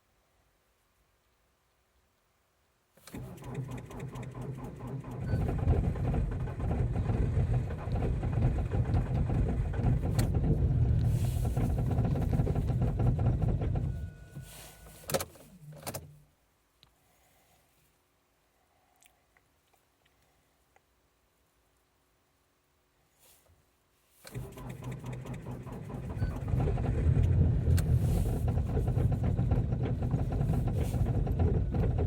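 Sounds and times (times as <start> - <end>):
diesel engine cranking: 3.0 - 15.2, 24.3 - 32.0.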